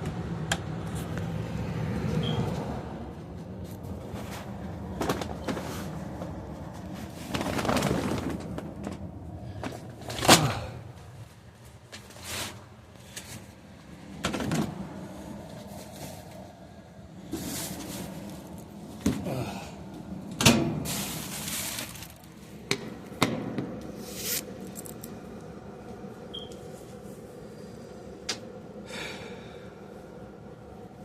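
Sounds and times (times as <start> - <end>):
rustling: 20.9 - 22.4.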